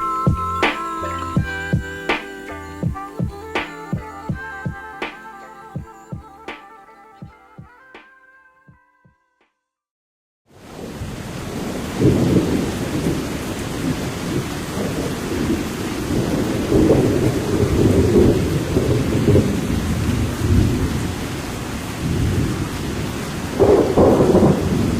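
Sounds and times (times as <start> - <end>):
rain hissing: 0.0 - 6.1.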